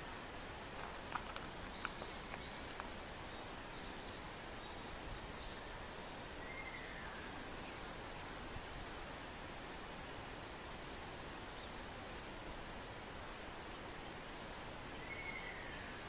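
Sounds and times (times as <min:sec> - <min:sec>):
steady hiss: 0:00.0 - 0:16.0.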